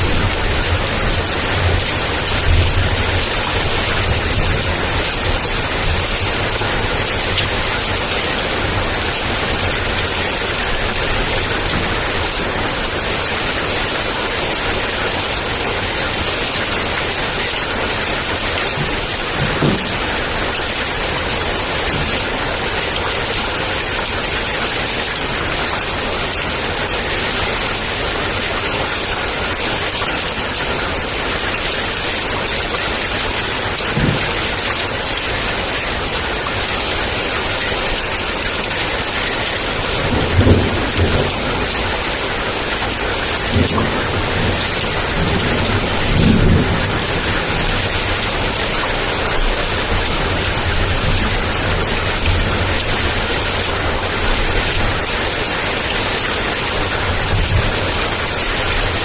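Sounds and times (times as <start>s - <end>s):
low thunder rumbles: 0.0s - 14.9s, 39.8s - 55.0s
heavy rain: 0.0s - 59.0s.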